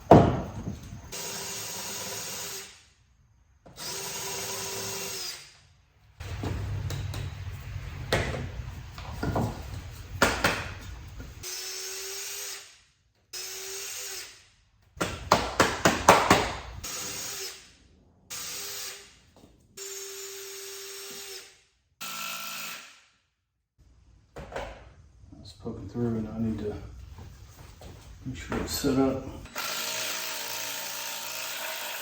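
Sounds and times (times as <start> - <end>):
power drill boring into wood: 3.8 - 5.5, 19.8 - 23.0, 29.5 - 32.0.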